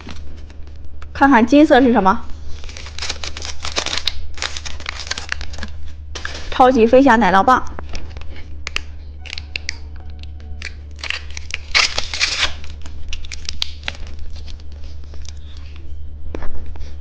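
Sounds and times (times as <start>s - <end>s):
wrapper rustling and tearing: 2.4s - 6.6s, 10.6s - 15.8s
plastic wrapper crinkling: 2.5s - 6.6s, 8.0s - 15.8s.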